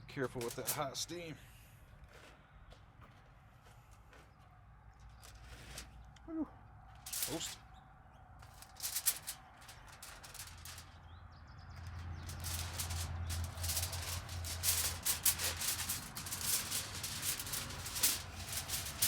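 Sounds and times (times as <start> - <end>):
aluminium foil crinkling: 0.3 - 0.9, 5.1 - 6.1, 6.9 - 7.6, 8.4 - 11.1, 11.8 - 19.0.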